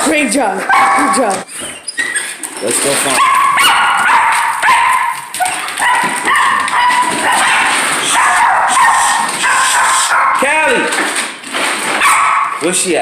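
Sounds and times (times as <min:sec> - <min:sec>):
dog whining and yipping: 0:00.7 - 0:10.3.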